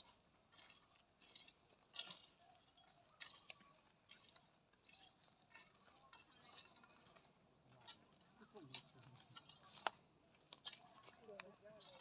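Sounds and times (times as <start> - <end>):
faint high chirps: 0.6 - 7.2.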